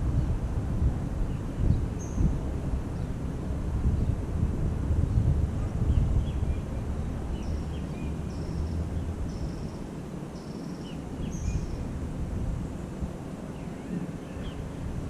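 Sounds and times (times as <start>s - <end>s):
small birds chirping and trilling: 1.3s - 2.3s, 5.8s - 11.9s.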